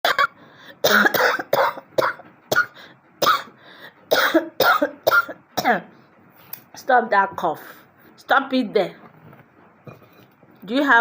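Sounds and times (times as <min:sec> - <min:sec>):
person coughing: 0:00.0 - 0:03.5, 0:04.1 - 0:05.9.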